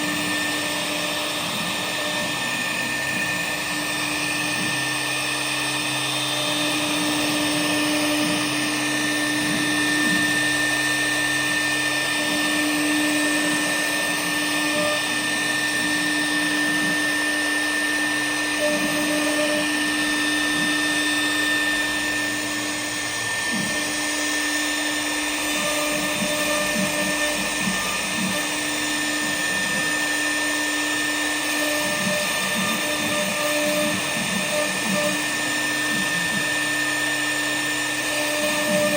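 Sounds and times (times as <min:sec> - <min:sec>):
router spindle whine: 0:00.0 - 0:38.9.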